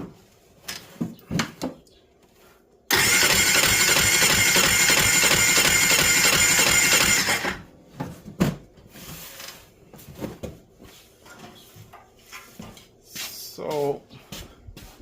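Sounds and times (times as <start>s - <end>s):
engine cranking over: 2.9s - 7.7s.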